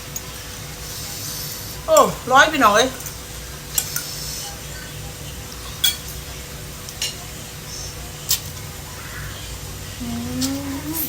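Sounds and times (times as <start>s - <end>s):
cutlery clinking against a dish: 2.9s - 4.2s, 5.6s - 7.3s, 8.2s - 8.7s
person humming: 10.0s - 11.0s.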